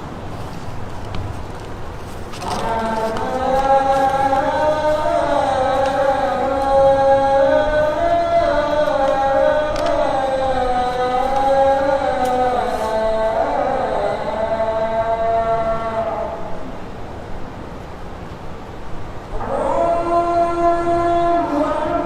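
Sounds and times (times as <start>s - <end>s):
person chanting: 2.0s - 17.0s, 19.3s - 22.0s.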